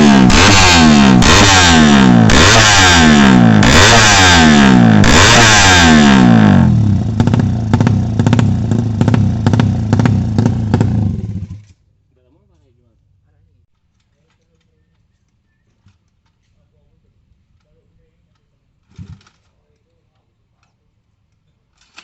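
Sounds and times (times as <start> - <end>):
motorcycle engine revving: 0.0 - 11.8.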